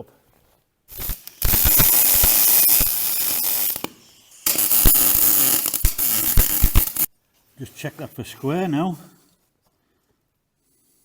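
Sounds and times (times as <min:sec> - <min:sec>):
arc welding crackle: 0:00.9 - 0:07.1.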